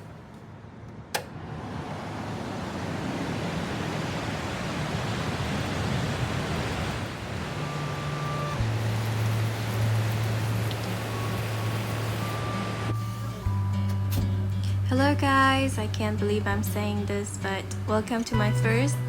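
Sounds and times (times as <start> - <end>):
low steady hum: 1.1 - 19.0
rain hissing: 2.7 - 13.6.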